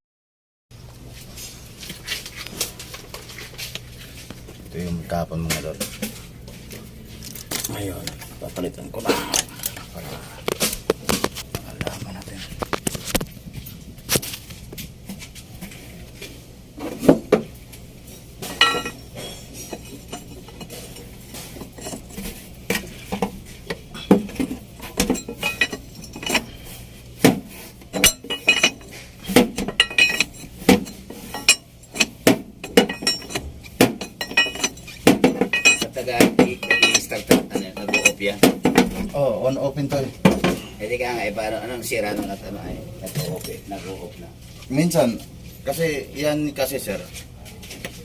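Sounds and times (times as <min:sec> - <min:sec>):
metal tools clinking: 0:18.4 - 0:23.2, 0:23.8 - 0:26.8, 0:27.8 - 0:39.9, 0:43.0 - 0:43.6.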